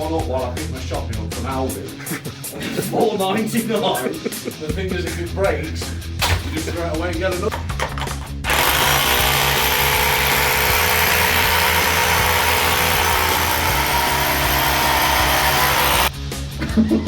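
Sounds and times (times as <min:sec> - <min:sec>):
rotary hammer drill running: 0:08.5 - 0:16.1.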